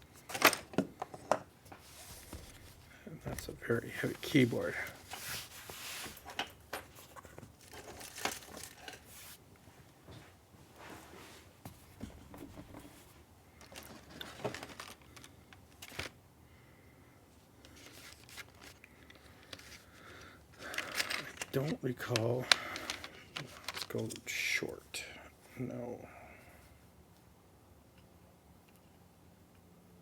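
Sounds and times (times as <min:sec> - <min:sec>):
packaging rustling and crinkling: 0:01.7 - 0:09.4, 0:11.8 - 0:16.2, 0:17.6 - 0:19.9, 0:20.5 - 0:24.2.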